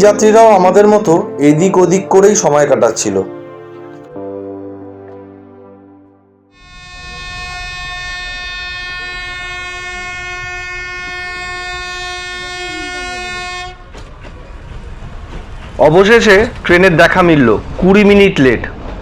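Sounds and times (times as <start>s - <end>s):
train horn blast: 6.5s - 14.0s
low train rumble: 6.6s - 19.0s.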